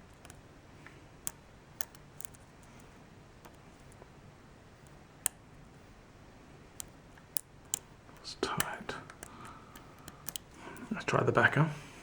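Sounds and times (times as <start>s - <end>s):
lock pick clicking in lock: 1.2s - 2.5s, 9.1s - 10.9s.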